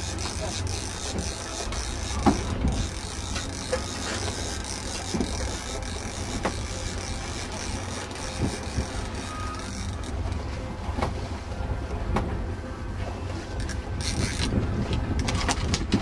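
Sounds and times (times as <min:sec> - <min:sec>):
wind rumbling on microphone: 0:10.2 - 0:16.0.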